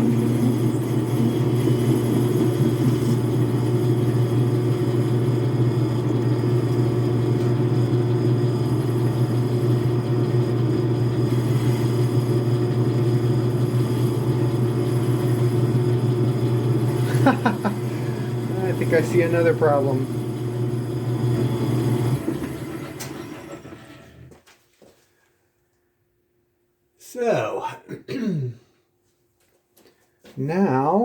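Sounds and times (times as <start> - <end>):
metal lathe motor humming: 0.0 - 24.3.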